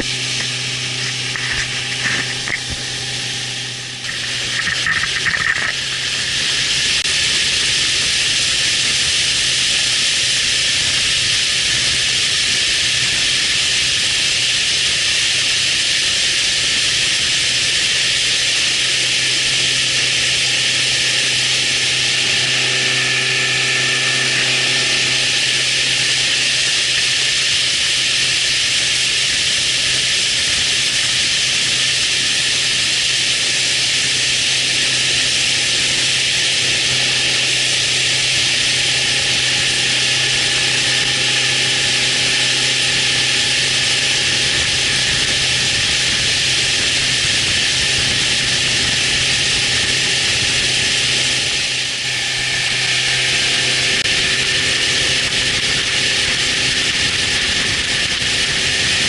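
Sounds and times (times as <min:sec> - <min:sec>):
motor humming: 0:00.0 - 0:59.0
loud hiss: 0:51.8 - 0:56.1.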